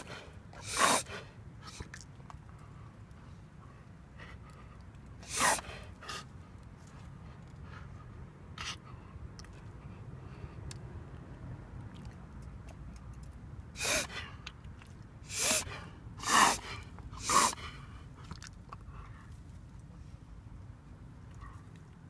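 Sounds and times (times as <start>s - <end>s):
dog harsh breath sounds: 0.0s - 2.0s, 2.7s - 10.6s, 13.7s - 14.4s, 15.2s - 19.5s.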